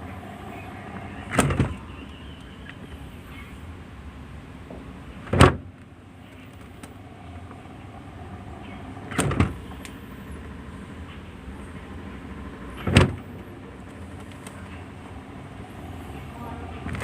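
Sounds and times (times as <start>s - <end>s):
refrigerator door thump: 12.9s - 13.2s.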